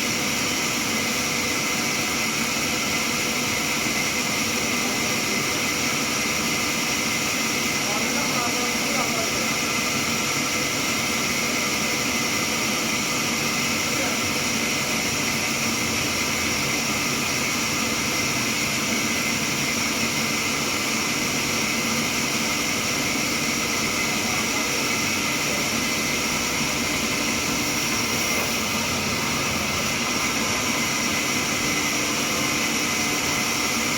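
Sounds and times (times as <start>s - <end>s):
sawmill saw running: 0.0s - 33.9s.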